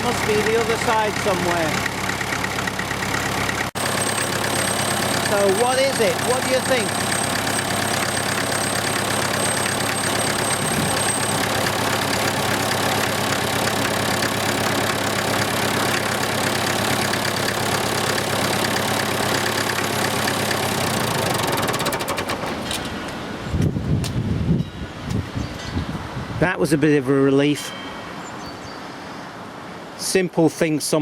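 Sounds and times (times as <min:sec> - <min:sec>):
tractor engine running: 0:00.0 - 0:23.3.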